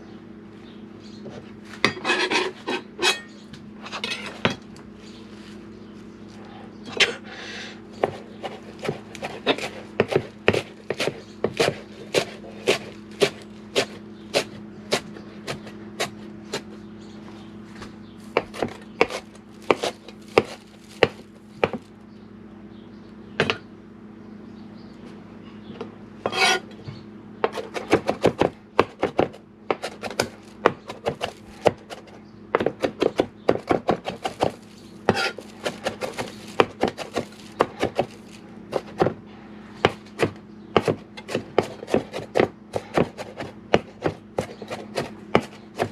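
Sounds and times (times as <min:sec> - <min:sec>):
steady low hum: 0:00.0 - 0:45.9
knife chopping on cutting board: 0:08.0 - 0:16.7, 0:18.4 - 0:21.8, 0:26.3 - 0:26.6, 0:27.4 - 0:39.2, 0:39.8 - 0:45.9.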